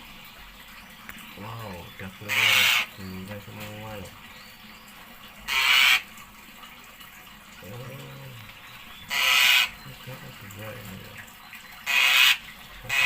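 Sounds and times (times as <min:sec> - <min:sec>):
chicks hissing begging calls: 0:02.3 - 0:02.9, 0:05.5 - 0:06.1, 0:09.0 - 0:09.8, 0:11.8 - 0:13.0.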